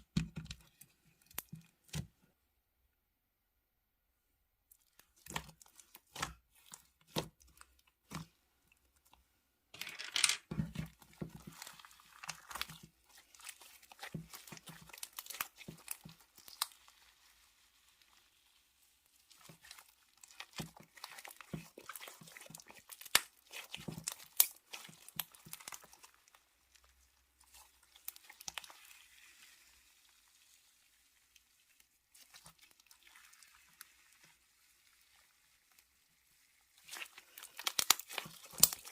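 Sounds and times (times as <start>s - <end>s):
slime crackling and crunching: 4.8s - 8.3s, 10.5s - 18.6s, 19.2s - 29.6s, 36.2s - 38.9s
slime popping: 36.8s - 38.9s.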